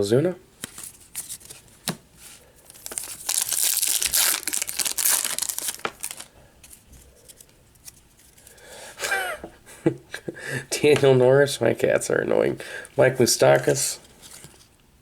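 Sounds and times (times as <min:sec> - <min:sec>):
card pack wrapper tearing: 0:02.7 - 0:06.3.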